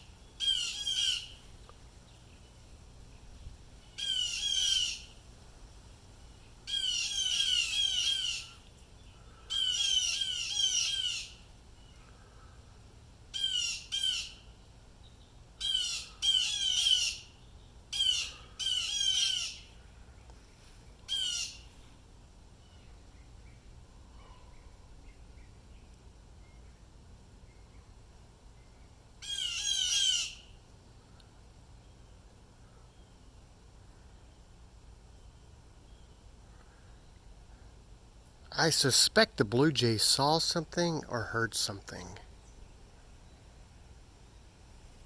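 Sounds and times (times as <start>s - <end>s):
jays giving harsh calls: 0.4s - 1.3s, 4.0s - 5.1s, 6.7s - 8.6s, 9.5s - 11.4s, 13.4s - 14.4s, 15.6s - 17.3s, 18.0s - 19.6s, 21.1s - 21.6s, 29.2s - 30.4s, 38.5s - 42.2s.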